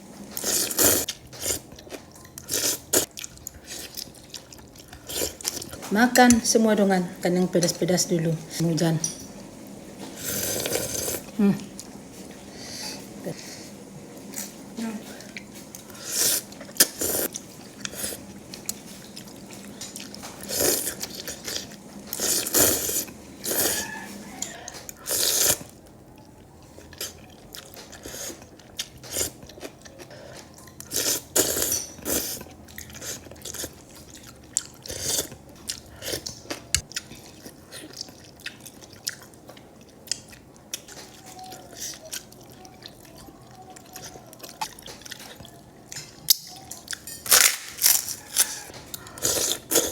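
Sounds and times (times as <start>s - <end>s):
noodle soup being chewed: 0.2s - 6.4s, 9.9s - 49.9s.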